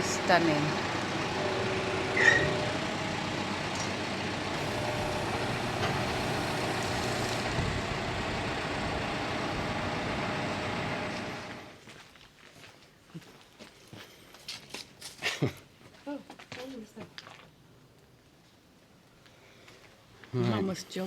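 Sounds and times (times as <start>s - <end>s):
vehicle engine running: 0.0s - 11.8s.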